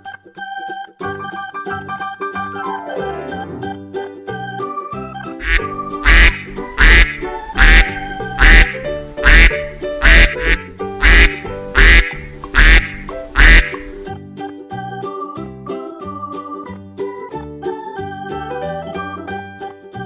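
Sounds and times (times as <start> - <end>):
duck quacking: 5.4 - 14.1
keyboard music: 5.4 - 14.1.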